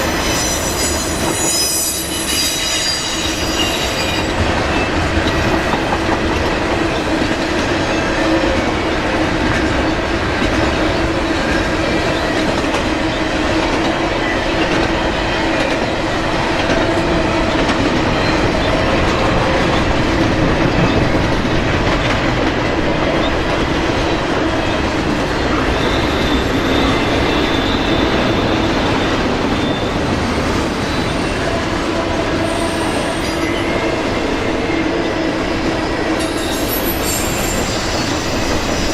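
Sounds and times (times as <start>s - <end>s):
train wheels clattering on rails: 0.0s - 38.9s
ringing wheel squeal: 0.1s - 4.4s, 25.6s - 28.7s, 36.2s - 38.9s.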